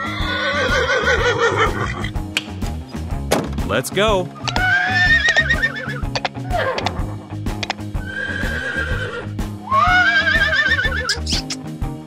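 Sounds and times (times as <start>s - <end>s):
horse whinnying: 0.0s - 2.2s, 4.4s - 7.2s, 8.0s - 11.6s
background music: 0.0s - 12.0s.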